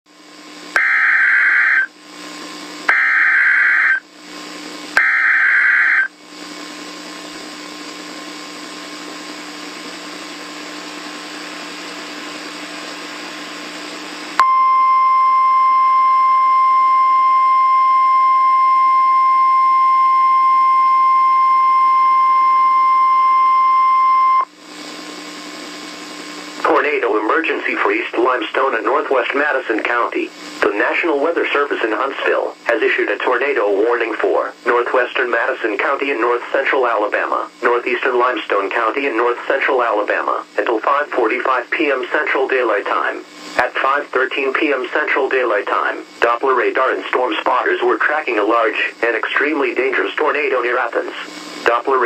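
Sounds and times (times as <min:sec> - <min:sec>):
radio hiss: 0:00.7 - 0:08.2, 0:25.9 - 0:52.0
screeching digital data bursts: 0:00.8 - 0:01.9, 0:02.9 - 0:04.0, 0:05.0 - 0:06.1
steady single-pitch attention tone: 0:00.8 - 0:01.9, 0:02.9 - 0:04.0, 0:05.0 - 0:06.1.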